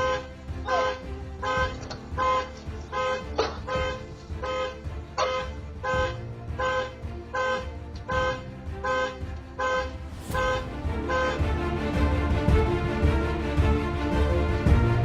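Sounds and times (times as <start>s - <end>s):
car horn blasts: 0.0s - 11.4s.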